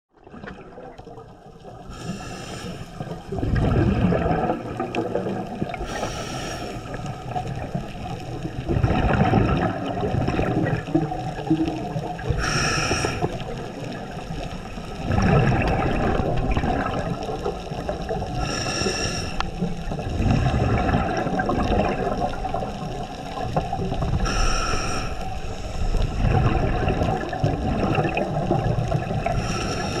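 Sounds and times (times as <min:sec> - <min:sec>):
exhaled bubbles rushing: 0:00.1 - 0:18.6, 0:19.5 - 0:24.4, 0:25.2 - 0:30.0
regulator hissing inhale: 0:01.9 - 0:03.1, 0:05.8 - 0:07.2, 0:12.4 - 0:13.5, 0:18.4 - 0:19.6, 0:24.2 - 0:26.2, 0:29.3 - 0:30.0.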